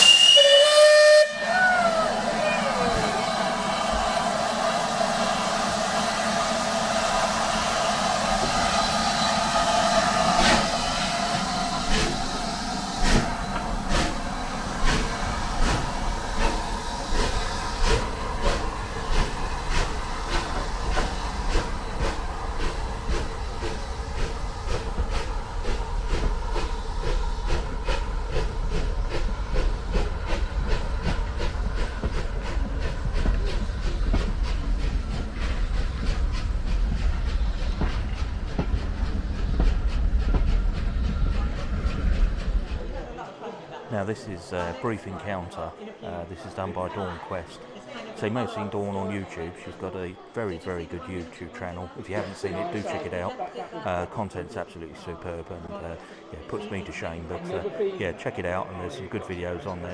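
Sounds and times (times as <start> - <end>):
steam hissing: 0.0 - 43.1
train wheels clicking on rail joints: 2.8 - 43.0.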